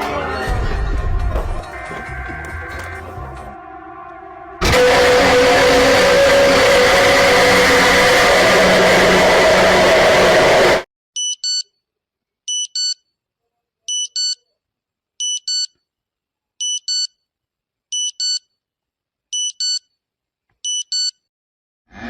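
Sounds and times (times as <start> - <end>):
loud rushing noise: 4.6 - 10.8.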